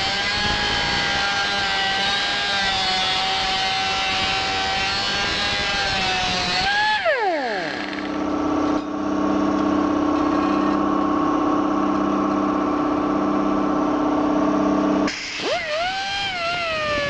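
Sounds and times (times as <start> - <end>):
die grinder whine spinning down: 0.0 - 9.3, 14.7 - 17.0
fast-pulsing mechanical hum: 3.4 - 17.0.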